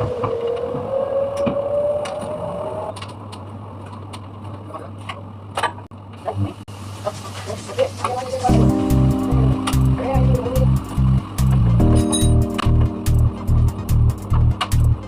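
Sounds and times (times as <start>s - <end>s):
rising whine: 0.0s - 3.0s, 8.5s - 15.0s
scattered clicks and knocks: 14.1s - 15.0s.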